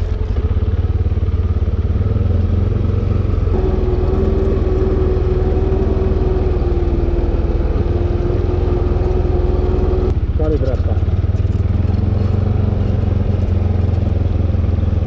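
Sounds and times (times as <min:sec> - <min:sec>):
atv engine rumbling: 0:00.0 - 0:15.0
steady whine: 0:03.3 - 0:10.2.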